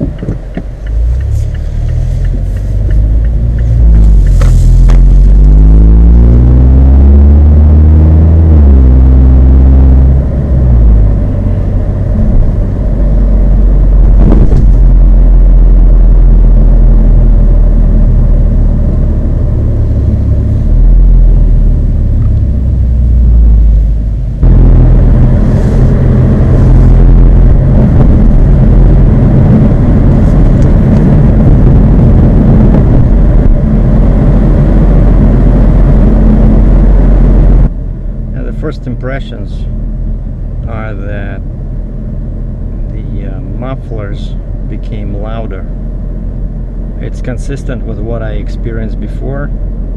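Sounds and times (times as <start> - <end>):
car exhaust drone: 0.0 - 49.9
wind buffeting microphone: 12.2 - 15.0, 24.4 - 37.7.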